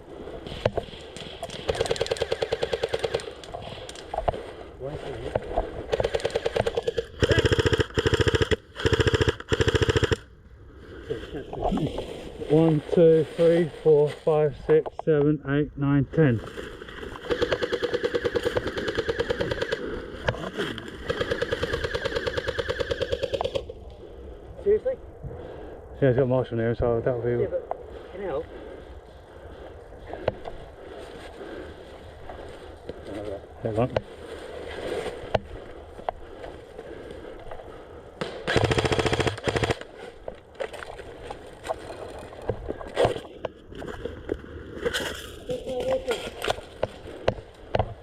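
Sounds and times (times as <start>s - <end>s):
airsoft rifle automatic fire: 1.5s - 3.4s, 5.9s - 10.3s, 17.2s - 19.9s, 21.0s - 23.6s, 38.2s - 39.8s.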